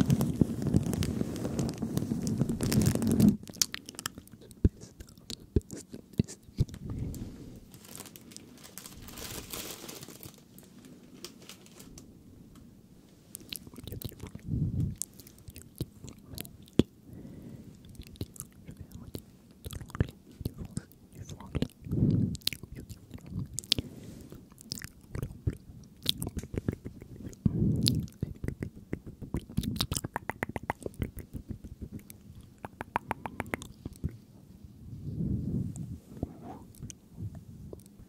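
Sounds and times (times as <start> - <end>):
tongue clicks: 3.4 - 6.8, 13.4 - 16.9, 17.8 - 34.2
wet lip smacks: 3.4 - 6.8, 13.3 - 16.9, 17.8 - 34.2
low breathy bursts: 6.8 - 7.8, 17.0 - 17.8, 23.7 - 24.4.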